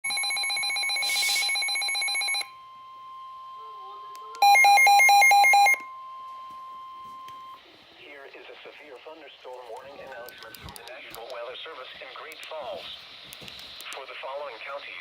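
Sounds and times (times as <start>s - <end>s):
harsh pulsing electronic tone: 0.8s - 2.2s.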